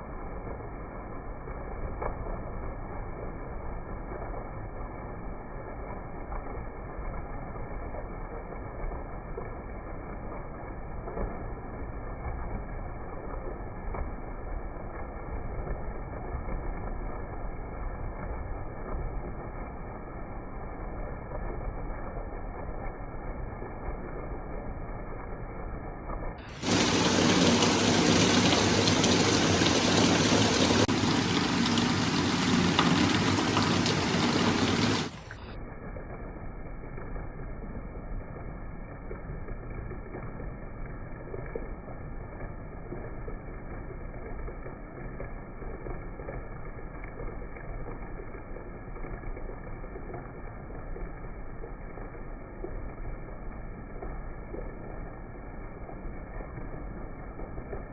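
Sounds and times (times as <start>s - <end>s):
heavy rain hissing: 26.4s - 35.6s.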